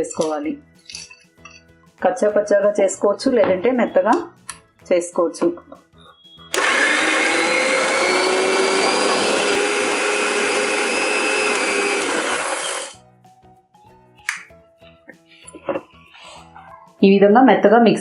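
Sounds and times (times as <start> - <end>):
mixer grinder grinding: 6.5 - 13.0.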